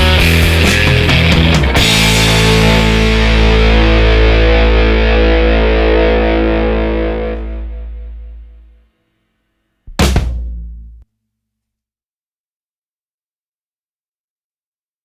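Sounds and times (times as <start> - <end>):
rock music with distorted guitar: 0.0 - 8.3.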